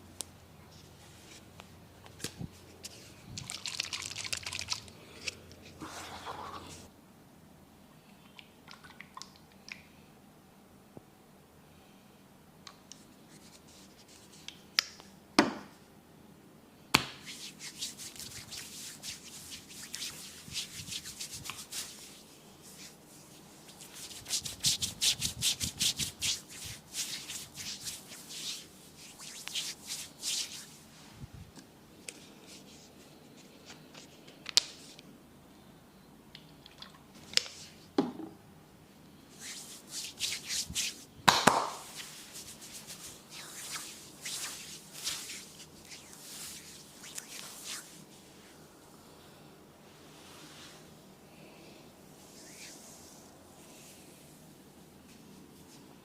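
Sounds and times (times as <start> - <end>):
hands rubbing hair and skin: 12.9 - 14.6, 17.1 - 31.5, 32.1 - 35.0, 39.3 - 48.6, 52.2 - 54.3.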